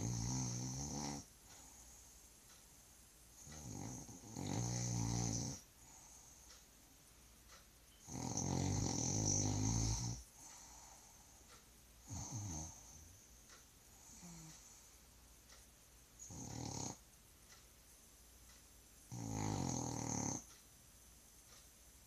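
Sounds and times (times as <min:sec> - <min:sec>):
person snoring: 0:00.0 - 0:01.3, 0:03.4 - 0:06.1, 0:08.0 - 0:11.0, 0:12.0 - 0:13.1, 0:16.2 - 0:17.0, 0:19.1 - 0:20.4.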